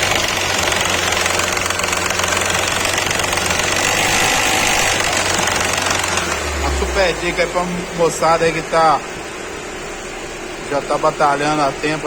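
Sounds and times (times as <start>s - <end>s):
small rattling fault noise: 0.0s - 6.9s
car engine accelerating: 0.0s - 12.0s.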